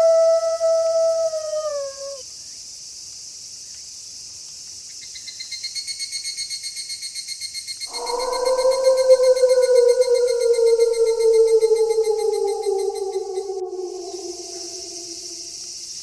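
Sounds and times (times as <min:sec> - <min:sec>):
wolf howling: 0:00.0 - 0:02.2, 0:07.9 - 0:15.7
night insects chirring: 0:00.0 - 0:16.0
pulsing cricket trill: 0:07.8 - 0:16.0.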